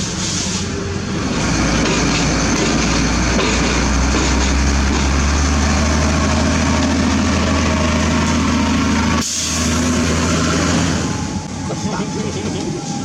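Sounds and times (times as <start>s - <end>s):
diesel engine humming: 0.0s - 13.0s.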